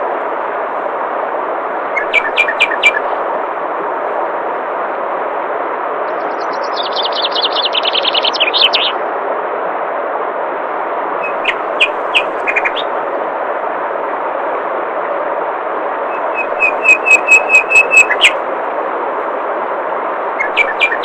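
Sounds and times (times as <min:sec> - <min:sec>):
songbird trilling and chirping: 0:02.0 - 0:03.0, 0:06.4 - 0:09.0, 0:11.2 - 0:12.9, 0:16.1 - 0:18.4, 0:20.4 - 0:21.0
flowing water: 0:10.6 - 0:21.0.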